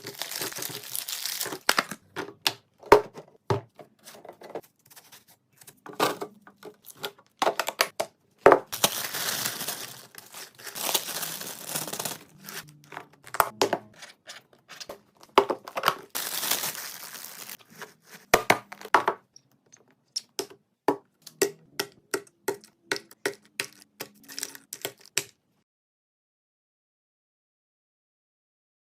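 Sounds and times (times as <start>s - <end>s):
plastic crinkling and tearing: 0.0s - 2.0s, 8.7s - 13.6s, 14.2s - 18.3s, 23.7s - 25.2s.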